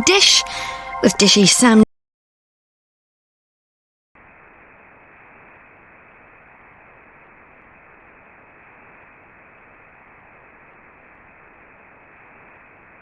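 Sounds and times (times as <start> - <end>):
television static hiss: 4.2 - 13.0.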